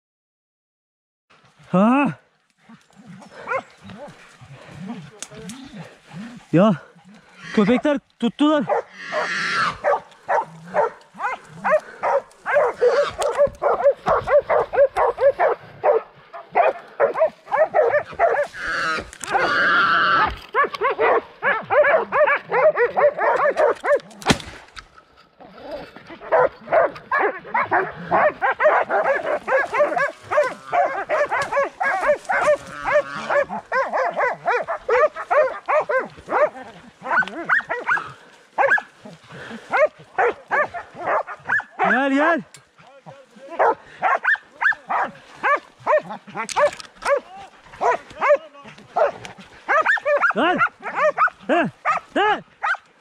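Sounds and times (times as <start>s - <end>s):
dogs barking rapidly: 3.1s - 8.0s, 8.6s - 24.1s, 26.1s - 42.8s, 43.5s - 52.9s
sharp crack: 23.5s - 25.0s.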